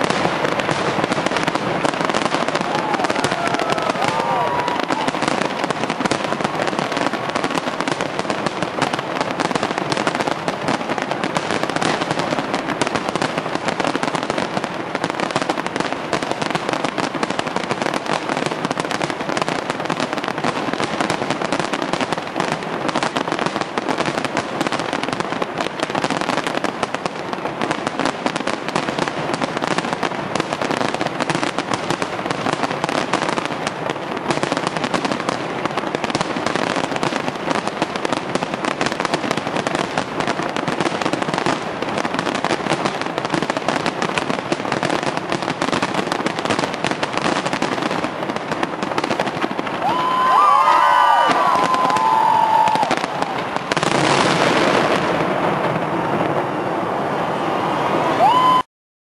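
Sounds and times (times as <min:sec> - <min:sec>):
fireworks bangs and crackles: 0:00.0 - 0:58.6.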